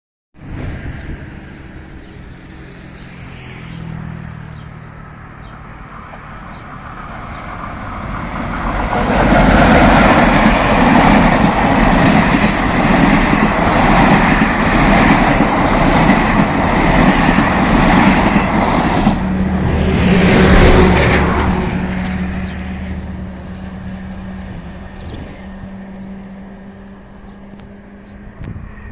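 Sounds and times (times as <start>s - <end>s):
train wheels rushing on rail: 0.4s - 28.9s.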